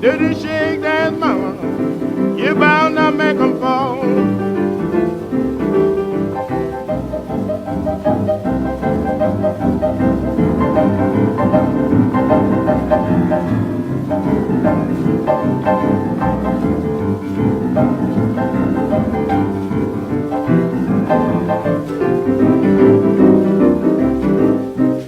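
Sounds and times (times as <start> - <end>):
boogie-woogie piano: 0.0 - 25.0.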